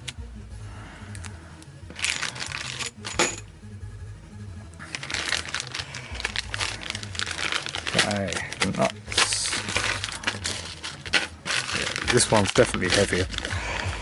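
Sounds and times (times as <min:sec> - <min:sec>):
metal bolts and nuts clinking: 0:02.0 - 0:03.5.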